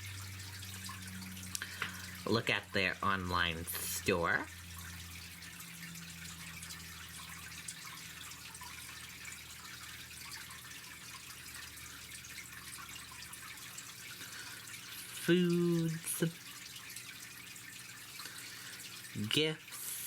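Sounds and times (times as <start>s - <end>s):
faint background hiss: 13.6s - 20.0s.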